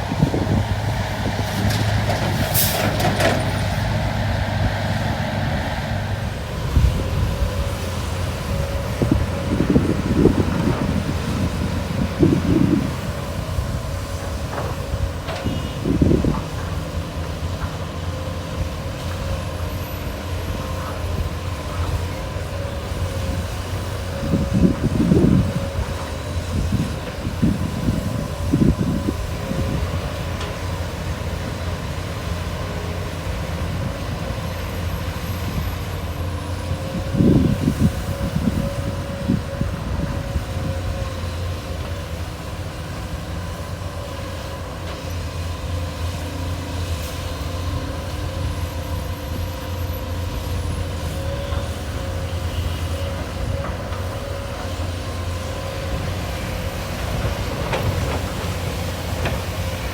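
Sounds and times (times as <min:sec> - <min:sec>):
low rumbles: 0:00.0 - 0:16.7
diesel excavator engine drone: 0:00.0 - 0:59.9.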